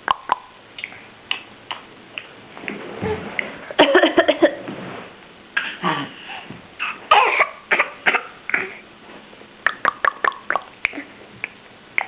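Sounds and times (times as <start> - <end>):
person coughing: 7.1 - 8.8.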